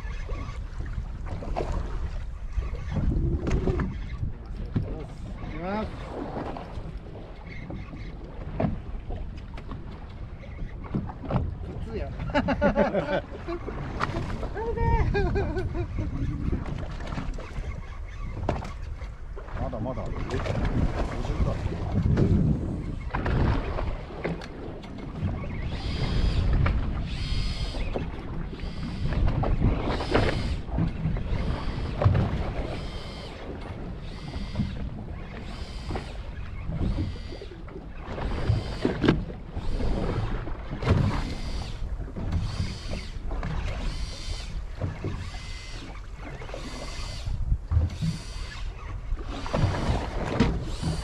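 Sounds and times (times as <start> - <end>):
wind noise: 0.0 - 7.8, 10.8 - 37.3
boat rumble: 0.0 - 51.0
fishing reel whirring: 14.7 - 16.5, 25.6 - 29.2, 32.6 - 33.4, 34.0 - 37.6, 39.6 - 40.2, 41.2 - 49.0, 50.6 - 51.0.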